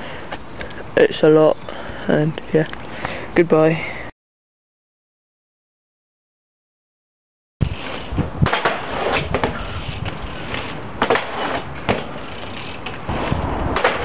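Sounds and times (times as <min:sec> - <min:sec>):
bike wheels rumbling on hard ground: 0:07.6 - 0:14.0.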